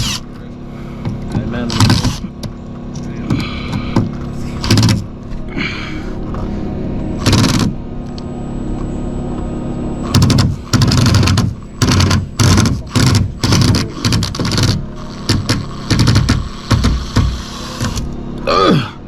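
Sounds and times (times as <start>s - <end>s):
power tool rattling bursts: 0.0s - 0.3s, 1.6s - 2.4s, 4.6s - 5.1s, 7.2s - 7.8s, 10.0s - 18.1s
steady low hum: 0.0s - 19.0s.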